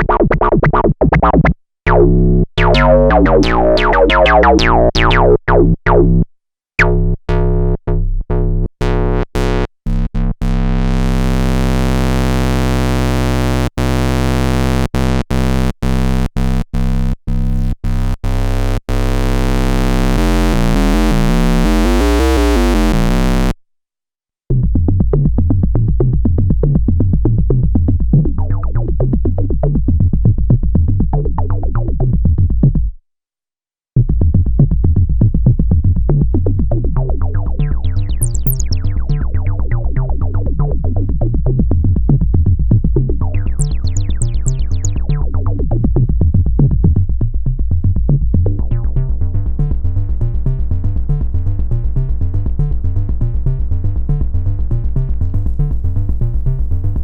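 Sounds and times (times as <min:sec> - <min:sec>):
fast sequenced synth pattern: 0:00.0 - 0:05.6, 0:19.0 - 0:23.5, 0:38.2 - 0:38.8, 0:43.6 - 0:44.8
short synthesizer notes: 0:00.0 - 0:07.2, 0:18.0 - 0:23.6, 0:38.2 - 0:38.9
buzzy held synthesizer note: 0:01.2 - 0:06.2, 0:06.8 - 0:23.6, 0:38.2 - 0:38.8.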